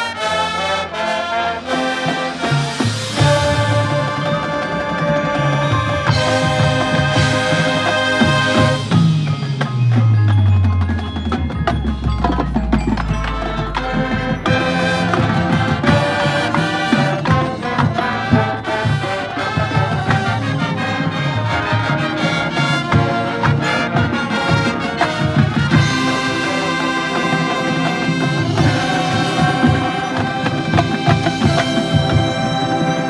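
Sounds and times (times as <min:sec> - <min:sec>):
drum-line percussion: 0:00.0 - 0:33.0
marching band brass: 0:00.0 - 0:33.0.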